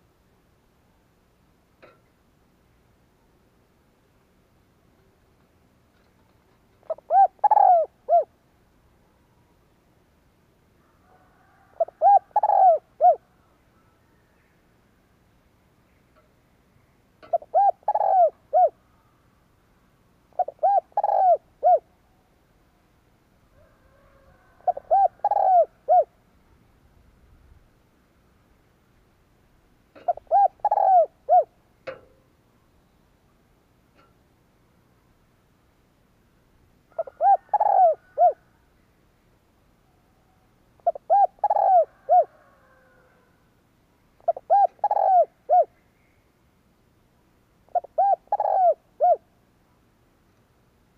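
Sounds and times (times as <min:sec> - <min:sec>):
dove cooing: 0:06.8 - 0:08.4, 0:11.0 - 0:14.2, 0:17.2 - 0:19.1, 0:20.3 - 0:22.0, 0:23.6 - 0:26.2, 0:29.9 - 0:32.0, 0:36.9 - 0:38.6, 0:40.8 - 0:43.4, 0:44.2 - 0:45.8, 0:47.7 - 0:49.3.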